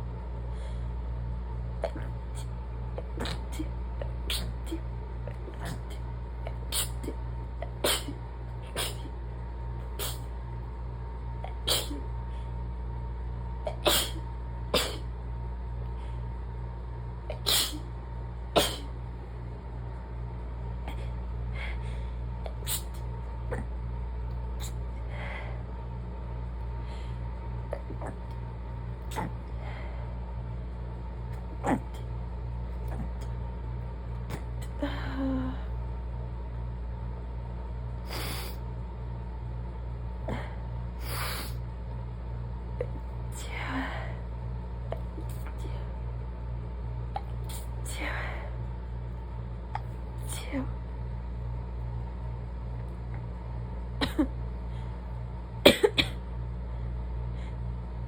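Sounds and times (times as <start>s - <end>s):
steady low hum: 0.0s - 58.0s
stifled sneezes: 1.8s - 9.1s, 10.0s - 10.3s, 11.5s - 12.1s, 13.7s - 15.1s, 17.3s - 17.9s, 18.6s - 18.9s, 22.5s - 23.7s, 24.6s - 24.8s, 47.2s - 47.8s
woman stifling sneezes: 6.7s - 9.1s, 10.0s - 10.3s, 11.6s - 12.0s, 13.7s - 14.2s, 14.8s - 15.1s, 17.3s - 17.9s, 18.6s - 18.9s, 22.6s - 23.6s.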